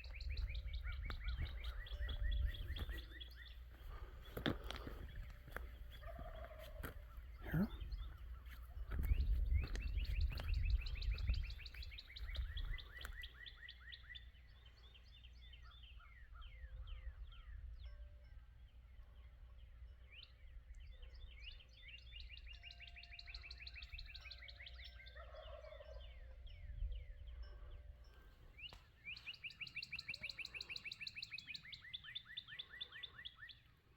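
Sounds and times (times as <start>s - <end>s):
turkeys gobbling: 0.7s - 9.1s, 25.0s - 26.1s.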